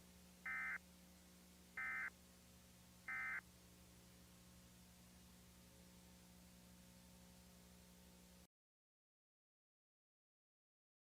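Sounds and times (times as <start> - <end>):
faint steady hum: 0.0 - 8.5.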